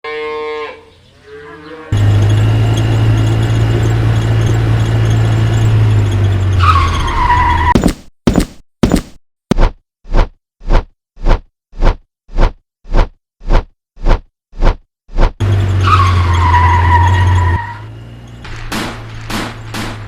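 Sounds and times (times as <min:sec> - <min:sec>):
car engine running: 0:02.0 - 0:06.7, 0:17.8 - 0:20.0
tyre squeal: 0:02.0 - 0:09.0, 0:15.4 - 0:18.4.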